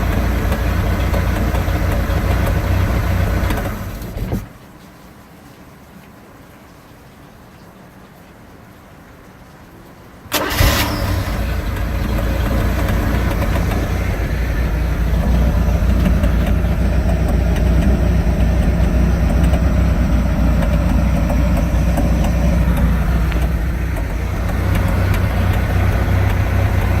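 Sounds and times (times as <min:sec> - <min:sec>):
boat engine starting and idling: 0:00.0 - 0:04.5, 0:10.3 - 0:27.0
faint engine ticks: 0:00.0 - 0:27.0.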